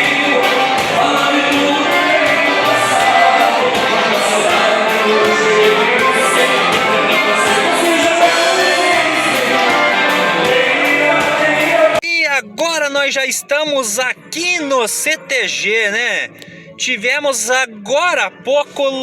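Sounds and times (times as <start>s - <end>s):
dance music with singing: 0.0s - 19.0s.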